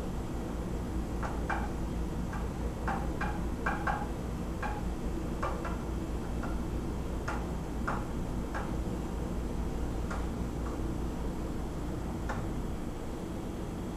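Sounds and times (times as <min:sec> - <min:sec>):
sharp clicking knocks: 0:01.2 - 0:06.6, 0:07.2 - 0:08.8.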